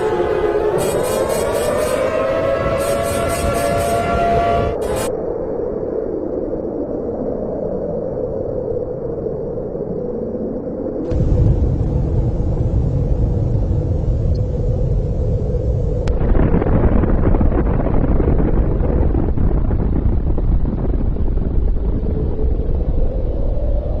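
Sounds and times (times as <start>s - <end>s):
explosion rumble: 11.1s - 23.1s
low hum: 11.1s - 24.0s.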